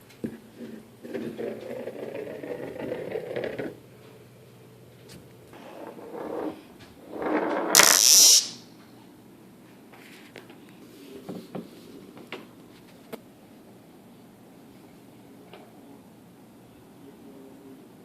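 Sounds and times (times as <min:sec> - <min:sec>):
magnets snapping and rattling: 0:07.7 - 0:08.6.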